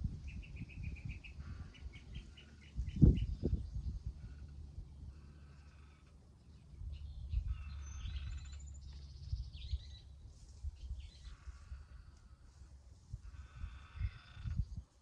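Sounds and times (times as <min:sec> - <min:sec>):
birds chirping: 0:00.2 - 0:10.2.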